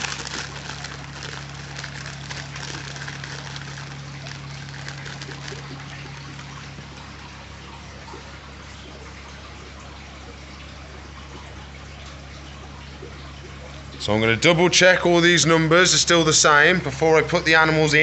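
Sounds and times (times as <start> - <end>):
fine crackling: 0.0 - 6.7
steady low hum: 0.0 - 14.5
water trickling in aquarium: 0.0 - 18.0.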